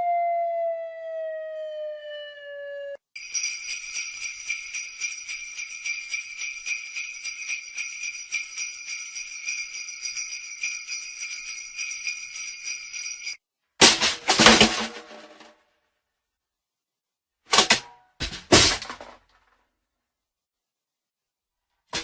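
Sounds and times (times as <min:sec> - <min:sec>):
jingle bells shaking: 0:03.2 - 0:13.4.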